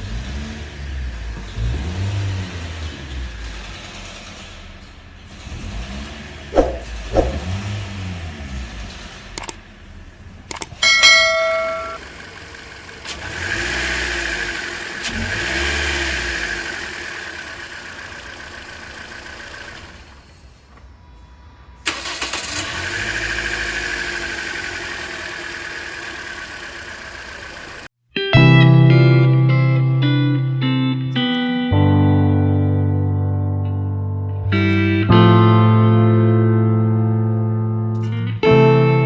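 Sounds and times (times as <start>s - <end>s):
car engine revving: 0.0s - 10.8s, 11.7s - 19.8s, 21.5s - 27.9s.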